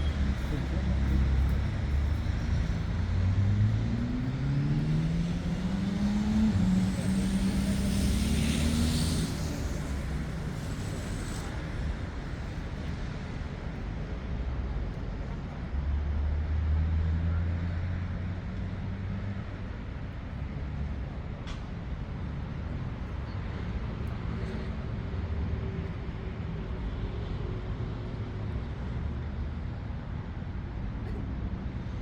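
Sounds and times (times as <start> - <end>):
vehicle engine accelerating: 0.0 - 13.3
low traffic rumble: 0.0 - 32.0.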